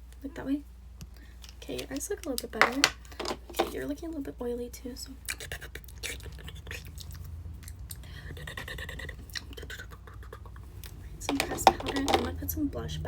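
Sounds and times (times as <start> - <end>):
makeup compact clicks and taps: 11.3 - 12.4.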